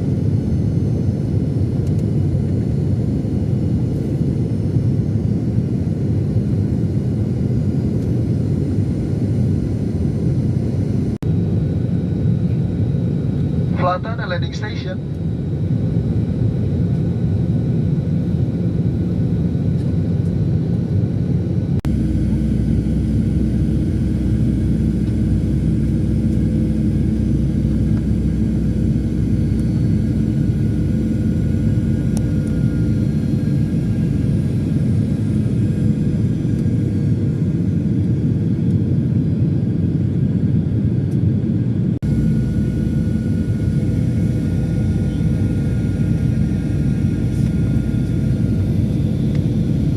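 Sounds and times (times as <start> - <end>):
airliner engine rumble in cabin: 0.0 - 49.9
faint steady hum: 21.8 - 37.4, 42.0 - 49.9.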